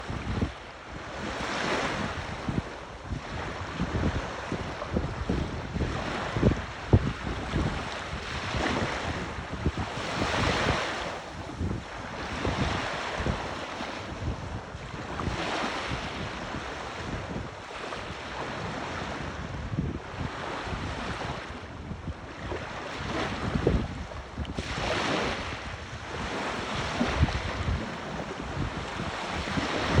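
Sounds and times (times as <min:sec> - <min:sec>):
sea waves breaking: 0:00.0 - 0:30.0
wind buffeting microphone: 0:00.0 - 0:30.0.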